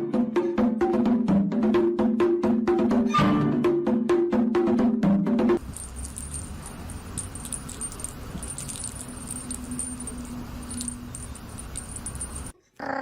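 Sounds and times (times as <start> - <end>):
light metallic jingling: 5.6 - 12.6.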